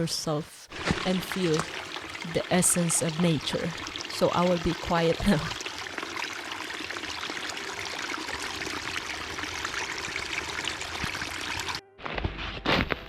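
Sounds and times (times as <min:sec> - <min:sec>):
small stream running: 0:00.0 - 0:11.8.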